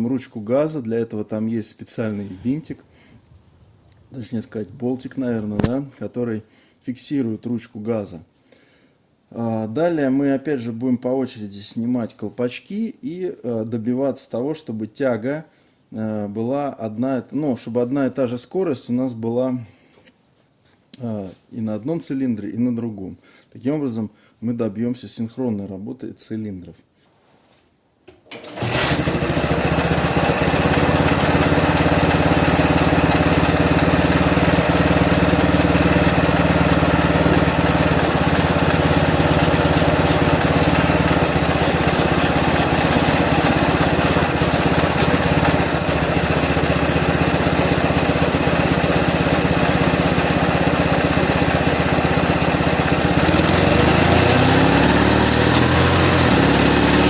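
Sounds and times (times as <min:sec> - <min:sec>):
motorcycle engine running: 0:28.6 - 0:57.0.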